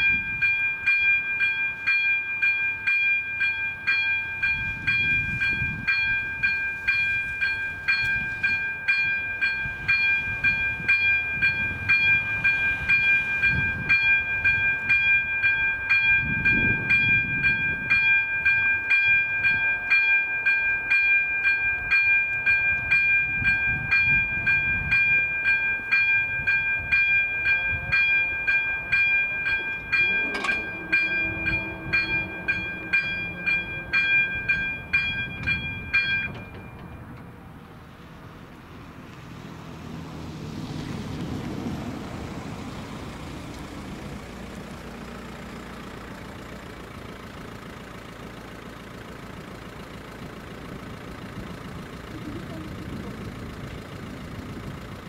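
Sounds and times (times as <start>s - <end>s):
level crossing warning bell ringing: 0.0s - 38.5s, 43.7s - 55.0s
low rumble: 29.3s - 39.2s.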